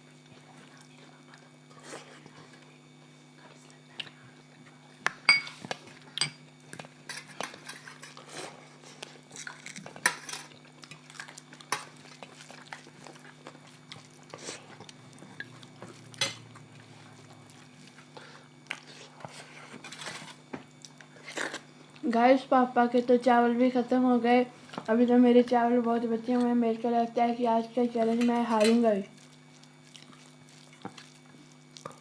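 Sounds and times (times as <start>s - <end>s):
steady low hum: 0.0s - 32.0s
cutlery and plates clinking: 10.0s - 10.5s.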